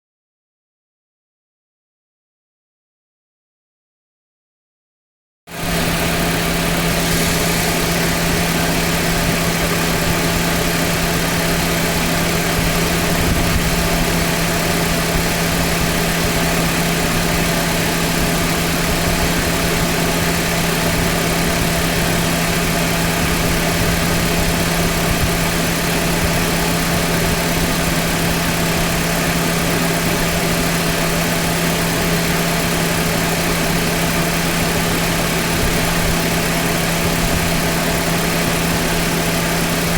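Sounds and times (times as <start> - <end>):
car engine idling: 5.5 - 39.9
air conditioning running: 6.0 - 11.2.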